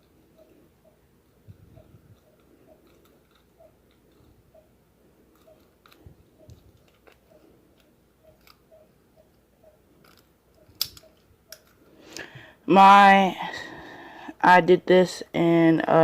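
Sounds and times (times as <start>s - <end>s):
lock pick clicks: 10.0s - 11.7s.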